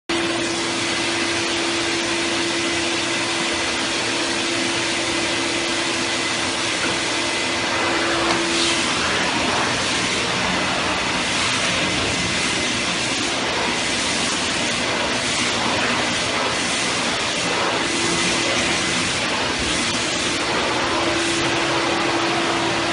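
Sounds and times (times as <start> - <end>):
vacuum cleaner running: 0.1 - 22.9
steady hum: 7.0 - 22.9.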